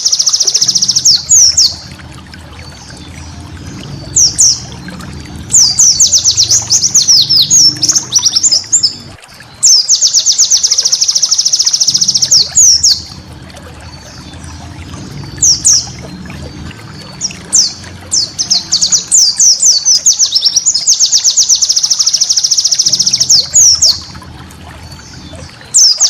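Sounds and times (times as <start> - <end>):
bird chirping: 0.0 - 2.0, 5.5 - 13.1, 17.0 - 24.2.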